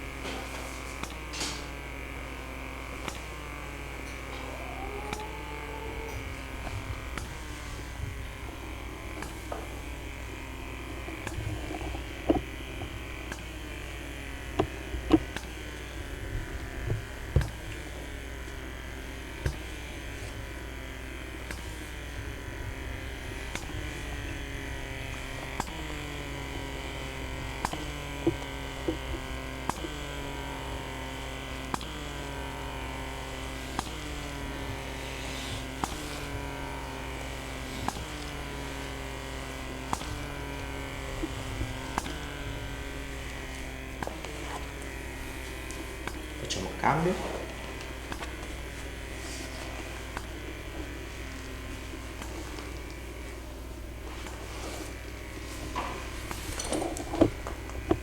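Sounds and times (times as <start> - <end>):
small electric motor buzzing: 0.0 - 58.0
sharp clicks: 1.0 - 18.6, 23.4 - 26.2, 27.2 - 30.1, 37.1 - 46.4.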